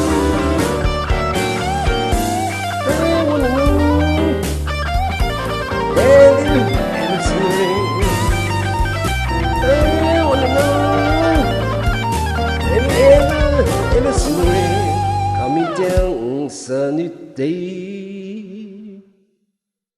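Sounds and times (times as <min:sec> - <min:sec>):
bass and drums: 0:00.0 - 0:15.4
electric guitar lead with bent notes: 0:00.0 - 0:16.4.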